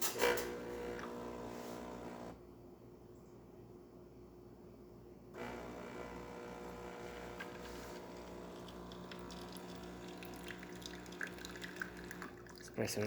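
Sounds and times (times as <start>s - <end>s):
espresso machine pump: 5.4s - 12.6s.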